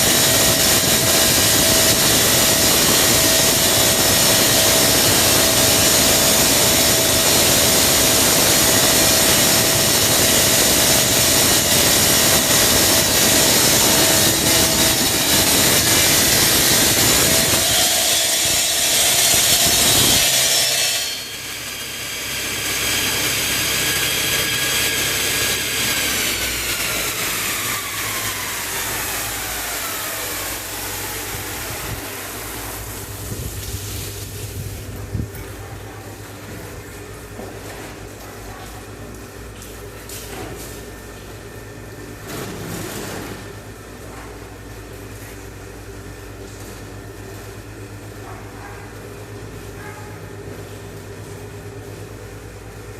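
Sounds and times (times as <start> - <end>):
motor running and winding down: 0.0 - 18.5, 21.2 - 33.1
stone-cutting saw grinding: 0.0 - 30.6.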